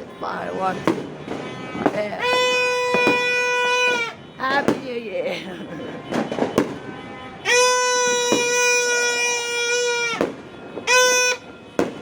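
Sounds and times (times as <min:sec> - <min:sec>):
firecracker pops: 0:00.8 - 0:02.2, 0:02.9 - 0:03.3, 0:06.1 - 0:09.2, 0:10.0 - 0:12.0
horn blast: 0:06.1 - 0:12.0.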